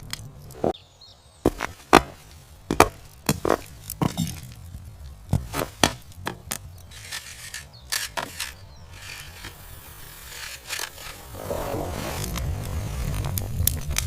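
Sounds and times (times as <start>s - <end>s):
low rumble: 11.2s - 14.0s.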